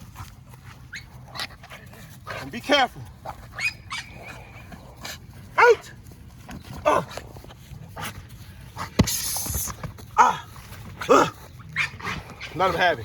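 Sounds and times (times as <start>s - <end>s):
dog barking: 5.6s - 5.8s
sharp thud: 8.9s - 9.8s
brief hiss: 9.0s - 9.8s.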